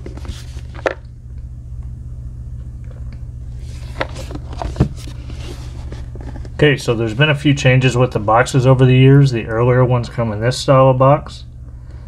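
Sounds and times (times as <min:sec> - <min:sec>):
steady low hum: 0:00.0 - 0:12.0
box knocking and scraping on table: 0:03.8 - 0:06.5.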